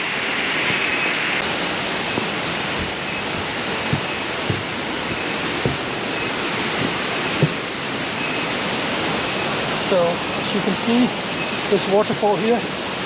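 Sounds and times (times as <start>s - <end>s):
waterfall rushing: 0.0s - 13.0s
soft knocks: 1.4s - 7.8s.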